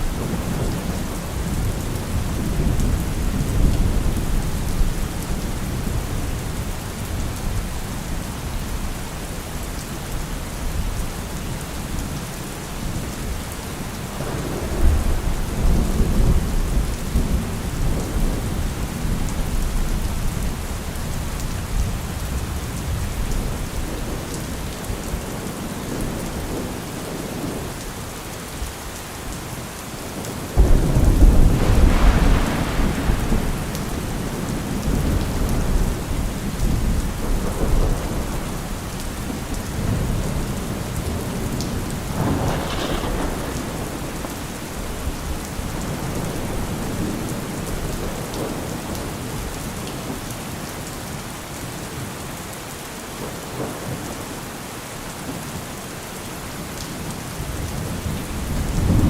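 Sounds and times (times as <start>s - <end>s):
steady rain: 0.0s - 59.0s
thunder rumbling: 14.2s - 27.6s, 30.5s - 49.4s, 57.4s - 59.0s
loud thunderclap: 30.6s - 40.5s, 41.1s - 49.0s, 57.7s - 59.0s.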